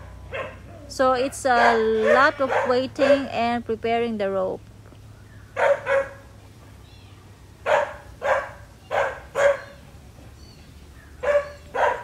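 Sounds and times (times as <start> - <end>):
dog barking: 0.0 - 0.7, 1.3 - 3.4, 5.6 - 6.3, 7.6 - 9.8, 11.2 - 12.0.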